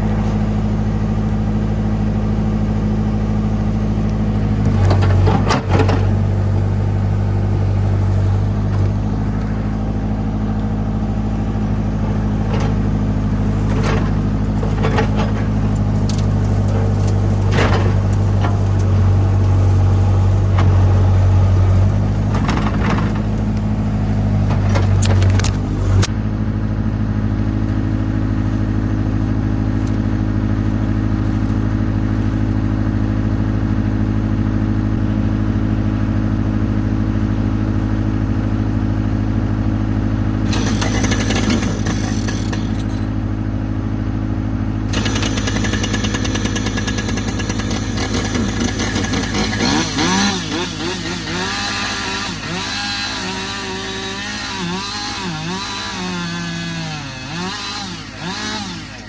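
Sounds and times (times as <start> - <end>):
excavator diesel engine running: 0.0 - 59.0
sharp knocks and cracks: 4.6 - 6.7, 12.4 - 23.8, 24.4 - 26.1, 44.9 - 54.0.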